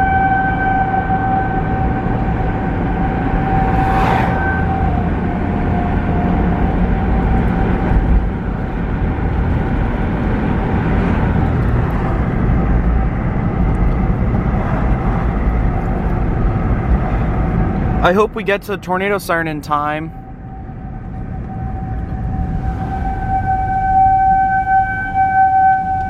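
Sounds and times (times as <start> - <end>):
distant warning siren: 0.0 - 18.0, 19.9 - 26.0
car road and engine noise: 0.0 - 26.0.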